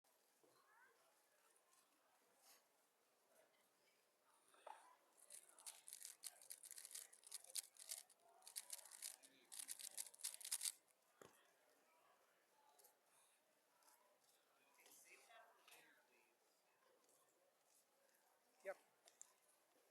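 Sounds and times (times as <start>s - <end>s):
speed cube clicking: 5.4s - 10.8s.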